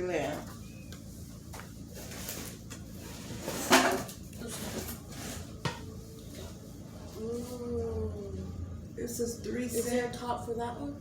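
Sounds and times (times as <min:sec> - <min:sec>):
pots and lids clattering: 0:03.4 - 0:04.1.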